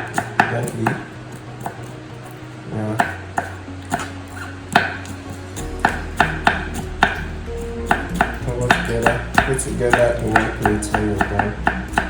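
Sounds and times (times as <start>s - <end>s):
background music: 0.0s - 12.0s
knife chopping on cutting board: 3.0s - 12.0s.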